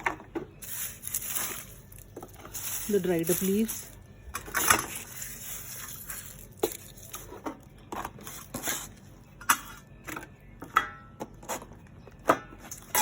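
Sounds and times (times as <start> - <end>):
dried leaves crackling: 0.6 - 9.0.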